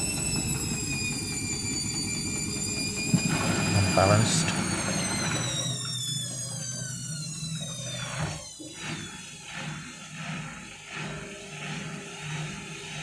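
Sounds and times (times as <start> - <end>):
washing machine drum pulsing: 0.0 - 8.2
washing machine motor whine: 0.0 - 13.0.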